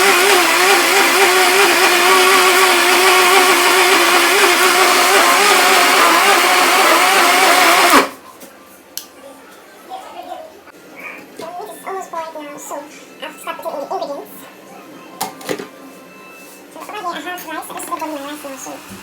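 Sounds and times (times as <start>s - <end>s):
blender motor running: 0.0s - 8.2s.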